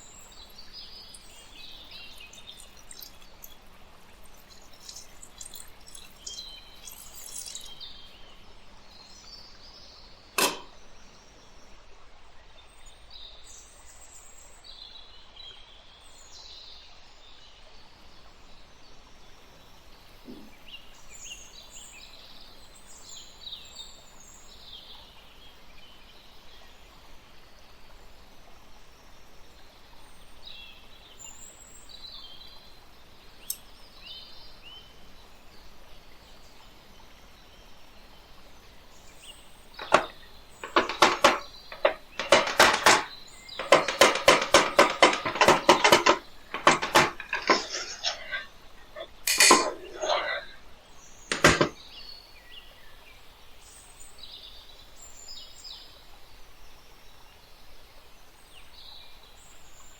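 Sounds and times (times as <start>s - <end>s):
faint bird chirps: 0.0s - 9.5s
sharp click: 10.4s - 10.7s.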